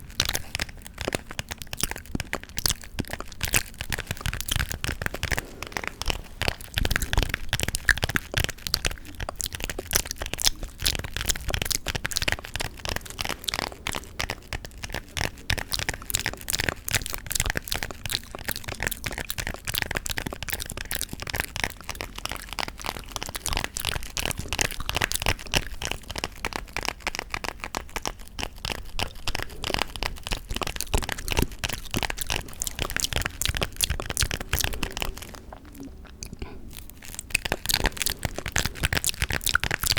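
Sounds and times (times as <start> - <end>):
gum chewing clicks: 0.0 - 39.9.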